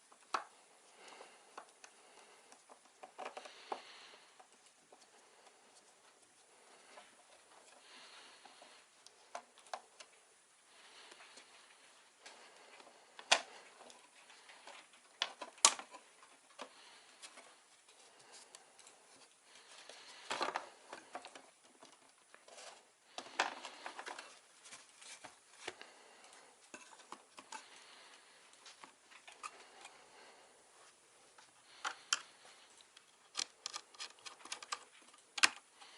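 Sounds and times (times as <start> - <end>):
small clicks and taps: 0.1 - 7.0, 31.4 - 35.9
handling rustles: 10.8 - 30.1.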